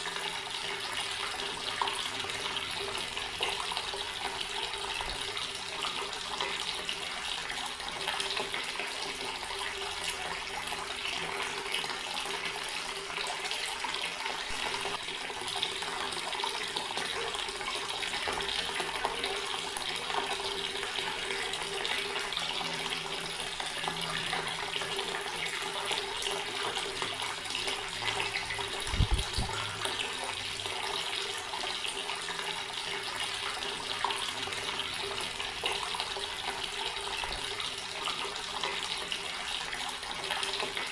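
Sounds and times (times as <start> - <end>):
water tap running: 0.0 - 40.9.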